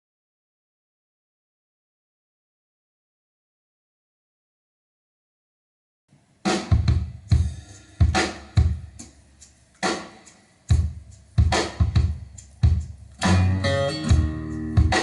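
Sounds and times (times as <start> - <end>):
kick and snare drum beat: 6.5 - 13.5, 14.1 - 15.0
guitar: 13.2 - 15.0.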